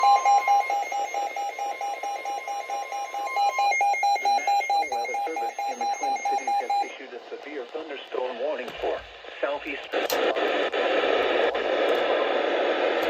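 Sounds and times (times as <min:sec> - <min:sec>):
alarm beeping rapidly: 0:00.0 - 0:06.9
steady high warning tone: 0:00.0 - 0:07.9.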